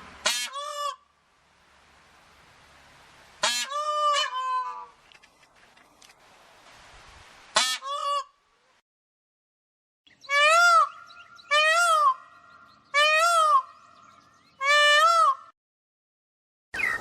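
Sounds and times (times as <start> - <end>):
bird harsh calls: 10.1 - 15.5, 16.8 - 17.0.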